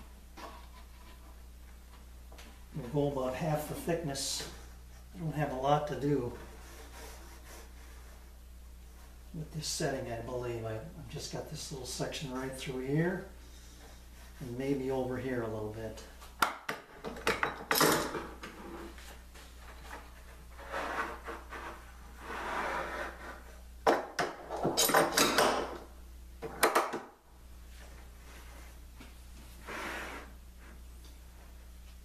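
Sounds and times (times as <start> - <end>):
low electrical hum: 0.0 - 32.0
wood and tools knocking and scraping: 0.3 - 2.5, 16.4 - 25.8.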